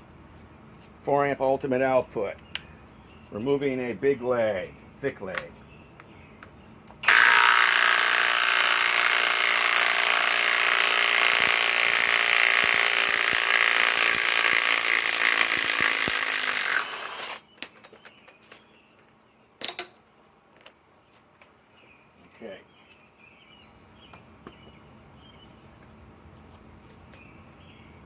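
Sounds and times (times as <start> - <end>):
impact wrench hammering: 7.0 - 18.2, 19.6 - 20.0
sharp metal clank: 19.6 - 20.1
light metallic clinks: 19.6 - 20.8.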